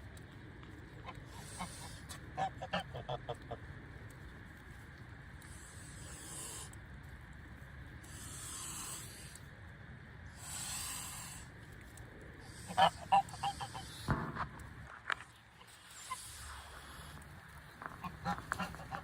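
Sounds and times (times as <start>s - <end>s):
geese hissing: 1.3s - 3.3s, 5.5s - 6.7s, 8.0s - 9.4s, 10.3s - 11.5s, 12.4s - 14.1s, 15.6s - 17.2s, 17.9s - 19.0s
geese honking: 1.3s - 3.5s, 12.4s - 14.1s, 17.9s - 19.0s.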